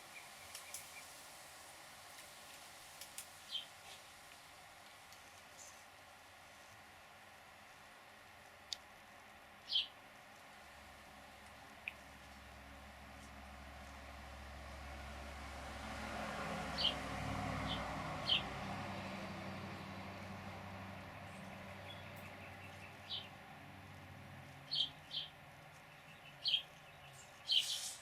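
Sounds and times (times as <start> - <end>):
bird chip calls: 24.6 - 28.0.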